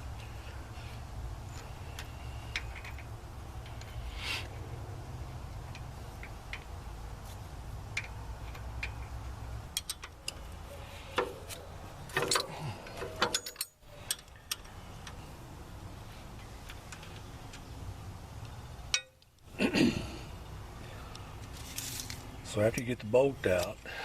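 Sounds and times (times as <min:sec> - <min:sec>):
metal clicks and clinks: 0:07.9 - 0:10.5, 0:11.2 - 0:15.2.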